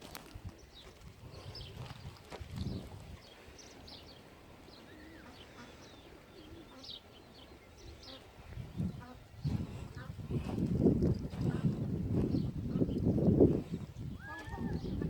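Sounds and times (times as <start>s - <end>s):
birds chirping: 0.6s - 15.0s
birds warbling or cooing: 2.7s - 10.2s, 14.1s - 15.0s.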